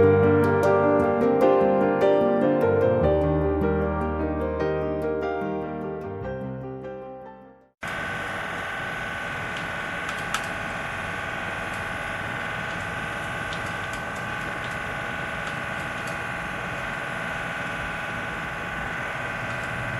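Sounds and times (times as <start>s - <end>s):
cooling fan whirring: 7.8s - 19.9s.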